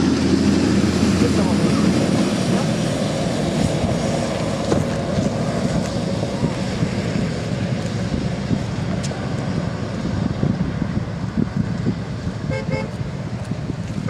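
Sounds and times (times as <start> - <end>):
vehicle road and engine rumble: 0.0 - 14.0.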